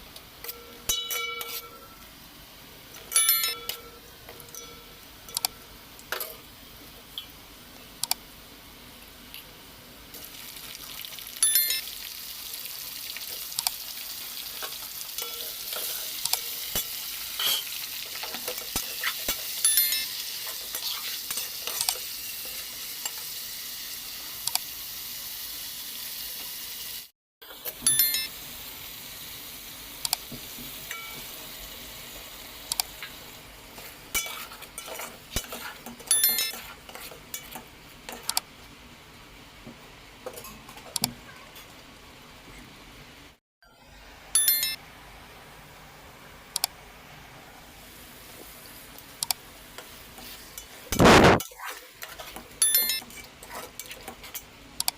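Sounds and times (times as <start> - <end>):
cutlery clinking on plate: 0.4 - 1.8.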